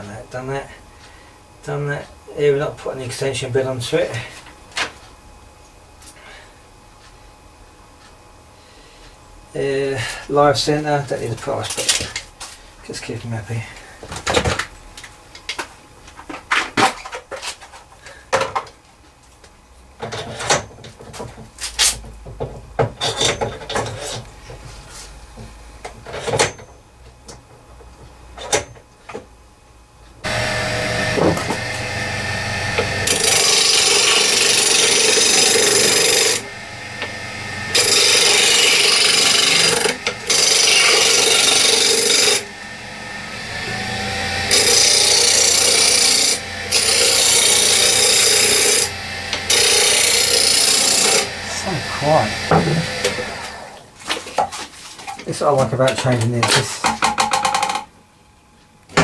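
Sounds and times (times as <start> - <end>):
rasping rushing noise with whine: 30.2 - 34.2, 35.1 - 50.4.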